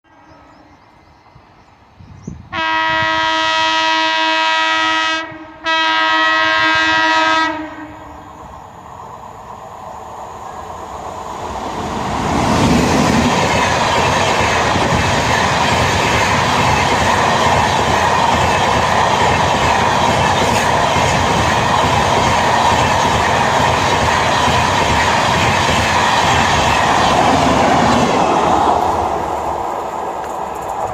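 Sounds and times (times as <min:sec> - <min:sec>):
train horn blasts: 0:02.5 - 0:08.2
train rushing past: 0:05.7 - 0:30.9.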